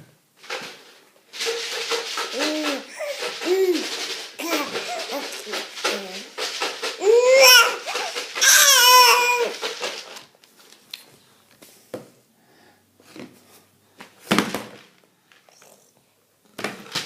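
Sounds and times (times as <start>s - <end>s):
baby squealing: 2.4s - 5.4s, 7.0s - 9.6s.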